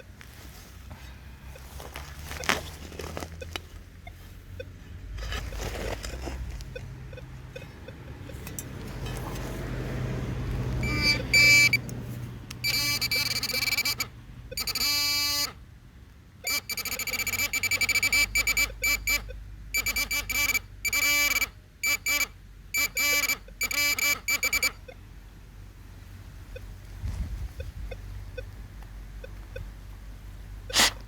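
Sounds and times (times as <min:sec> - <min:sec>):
metal detector pulsing beeps: 0:10.8 - 0:11.8, 0:12.6 - 0:15.6, 0:16.4 - 0:24.9, 0:30.7 - 0:31.0.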